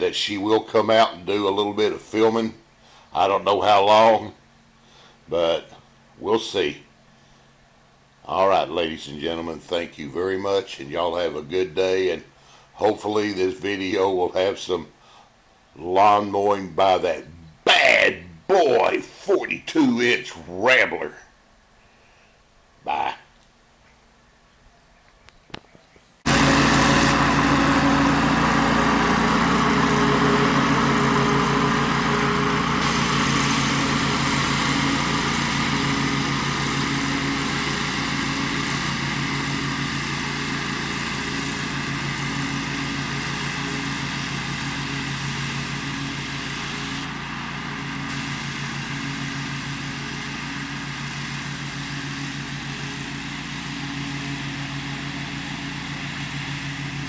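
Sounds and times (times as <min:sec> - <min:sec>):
lawn mower engine running: 0:26.2 - 0:57.0.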